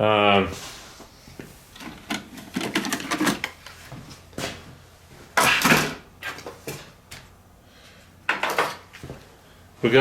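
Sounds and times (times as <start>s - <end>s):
circuit boards clattering: 1.8s - 3.7s.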